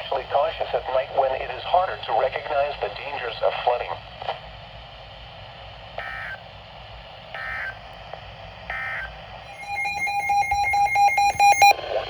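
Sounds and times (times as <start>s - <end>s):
choppy steady tones signal: 8.7s - 12.0s
warbling digital data tones: 9.5s - 11.8s.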